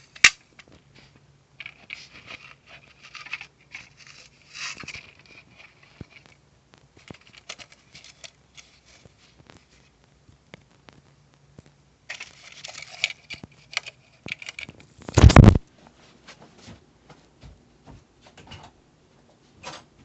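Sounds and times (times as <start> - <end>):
handling clicks and rustling: 0.0 - 15.7.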